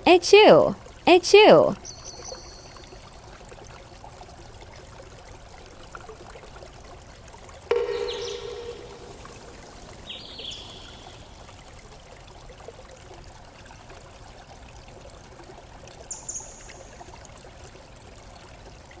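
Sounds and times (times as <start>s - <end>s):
running water stream: 0.7s - 19.0s.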